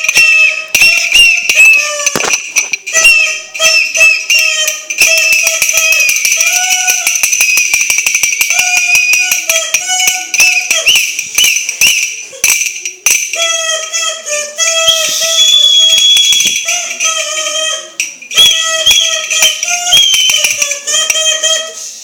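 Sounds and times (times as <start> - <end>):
rattle toy shaken: 0.0 - 22.0
toy whistles blowing: 0.0 - 22.0.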